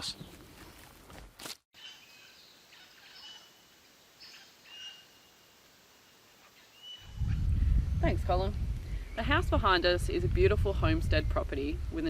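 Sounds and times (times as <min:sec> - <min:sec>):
bird chirps: 0:01.8 - 0:05.4
background hiss: 0:01.8 - 0:09.8.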